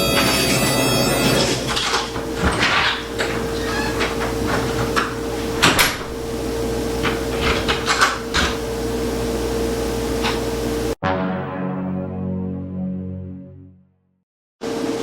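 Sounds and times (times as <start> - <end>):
music: 0.0 - 1.7, 11.0 - 14.2.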